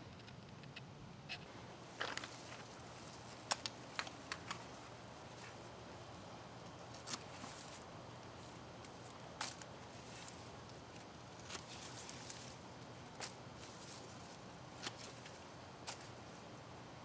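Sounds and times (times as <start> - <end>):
low steady hum: 0.0 - 17.0
clicks and crackles from handling plant: 1.9 - 5.6, 6.6 - 7.9, 8.8 - 16.2.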